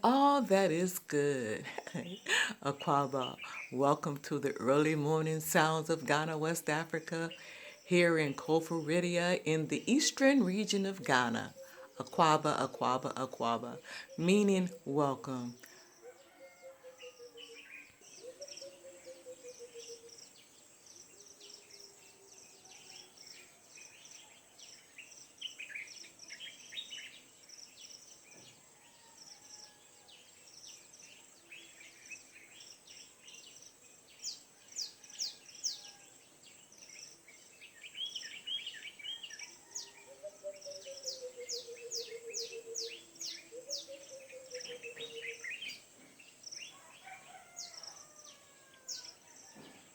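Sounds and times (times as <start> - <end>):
birds chirping: 0.0 - 49.9
rooster crowing: 15.9 - 17.6, 28.6 - 30.2, 46.7 - 49.9.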